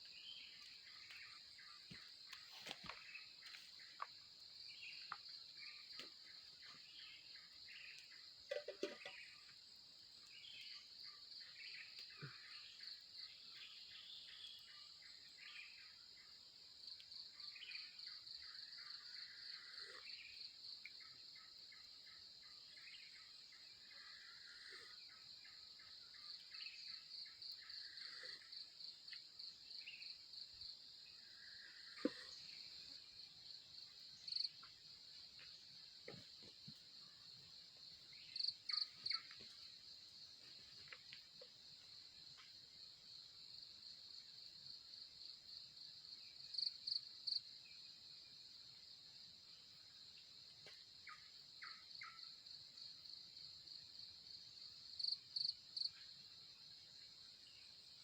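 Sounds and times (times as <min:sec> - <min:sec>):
crickets trilling: 0:22.8 - 0:58.0
short insect chirps: 0:38.1 - 0:42.6.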